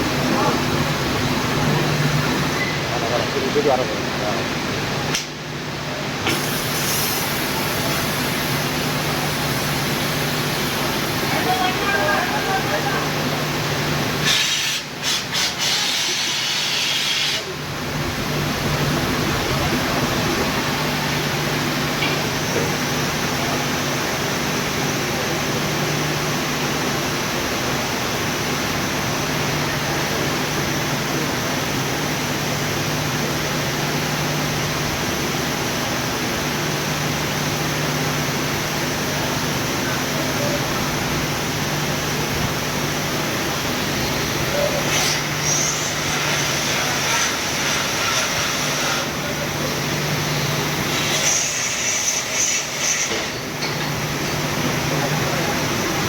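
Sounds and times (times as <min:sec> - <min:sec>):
industrial furnace hiss and rumble: 0:00.0 - 0:56.0
sharp hiss: 0:06.3 - 0:09.8, 0:14.2 - 0:17.5.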